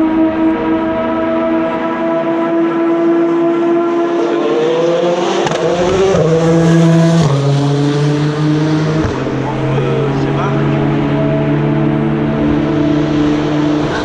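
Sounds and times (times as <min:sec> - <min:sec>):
deeper car engine shifting gears: 0:00.0 - 0:14.0
race car engine high-revving: 0:00.0 - 0:14.0.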